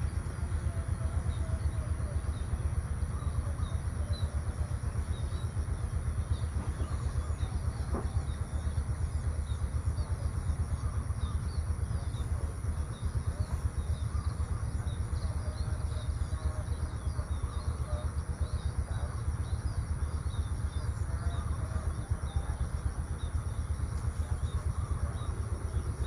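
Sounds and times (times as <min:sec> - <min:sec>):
small birds chirping: 0:00.0 - 0:26.0
steady low rumble: 0:00.0 - 0:26.0.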